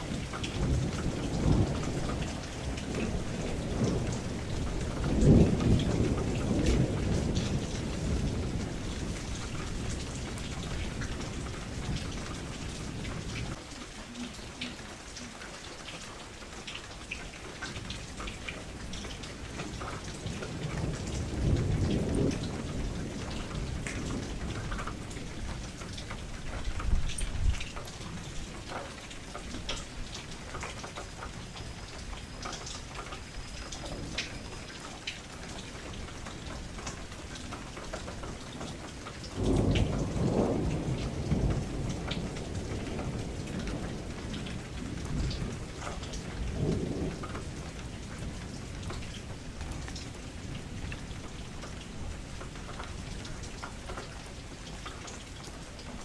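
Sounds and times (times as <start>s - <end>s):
thunder rumbling: 0.0s - 15.3s, 17.8s - 28.8s, 39.3s - 54.5s
rain against a window: 0.0s - 56.0s
raindrops ticking: 0.0s - 56.0s.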